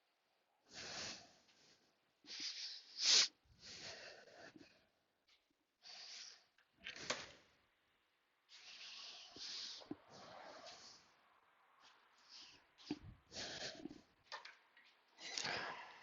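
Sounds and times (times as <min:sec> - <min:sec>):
person breathing hard: 0:00.6 - 0:05.0, 0:08.5 - 0:11.2, 0:11.8 - 0:14.2
person sniffing: 0:02.3 - 0:04.3, 0:05.8 - 0:06.5, 0:08.5 - 0:11.1.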